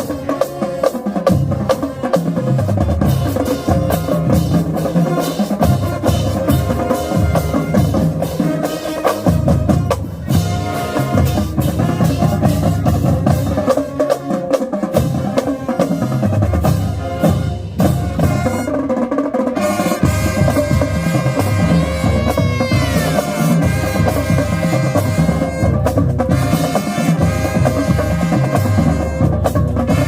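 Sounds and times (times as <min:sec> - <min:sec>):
drum line beating: 0:00.0 - 0:30.0
held horn notes: 0:19.9 - 0:25.8.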